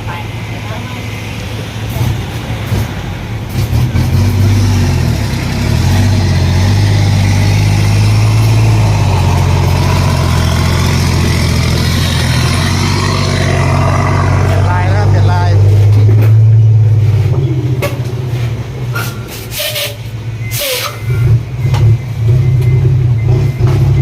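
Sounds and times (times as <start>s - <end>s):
truck diesel engine droning: 0.0s - 24.0s.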